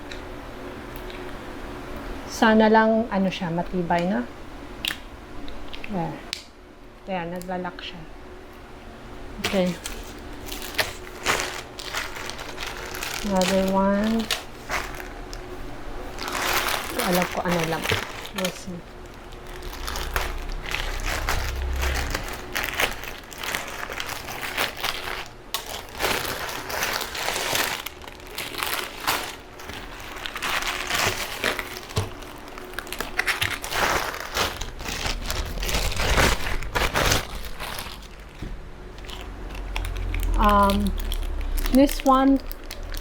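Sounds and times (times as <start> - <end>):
packaging crinkling and rustling: 9.4 - 43.0.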